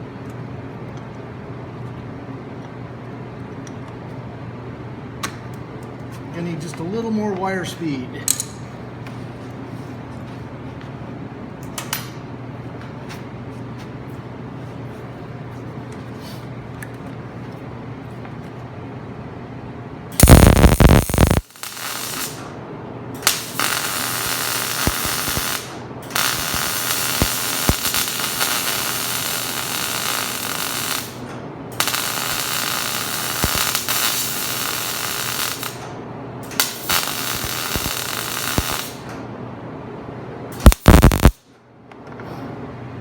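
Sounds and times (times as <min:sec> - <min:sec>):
welding arc crackling and hissing: 0:20.2 - 0:22.6, 0:23.2 - 0:39.1, 0:40.6 - 0:41.4.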